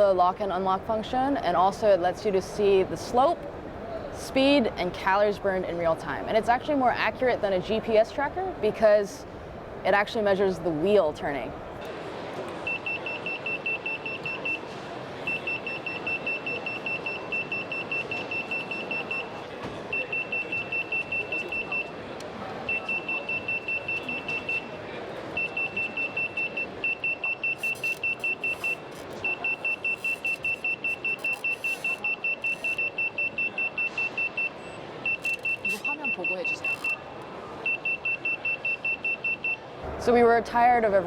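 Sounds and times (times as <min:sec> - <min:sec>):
steady background din: 0:11.4 - 0:40.0
high-pitched rapid alarm beeping: 0:22.7 - 0:24.7, 0:25.4 - 0:37.0.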